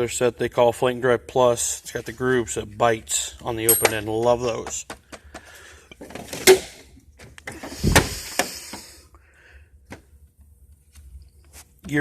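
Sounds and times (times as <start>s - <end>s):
drawer heavy thump: 7.8s - 8.2s.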